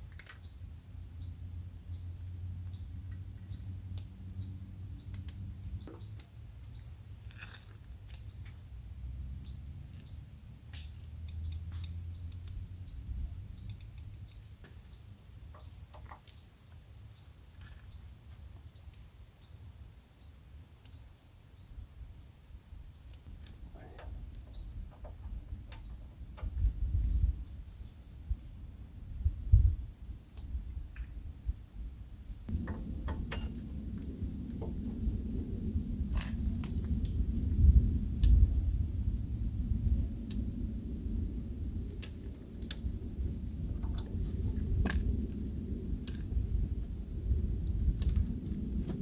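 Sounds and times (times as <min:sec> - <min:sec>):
bird chirping: 0:00.3 - 0:08.7, 0:09.4 - 0:26.4
low rumble: 0:32.4 - 0:49.0.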